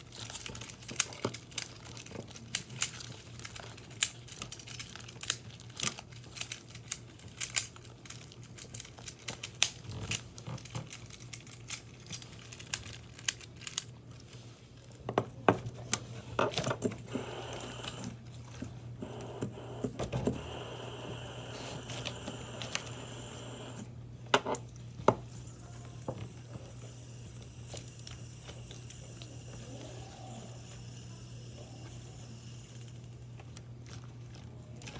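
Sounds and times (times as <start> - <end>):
crinkling plastic: 0.0 - 24.0, 32.8 - 34.9
steady low hum: 15.3 - 34.9.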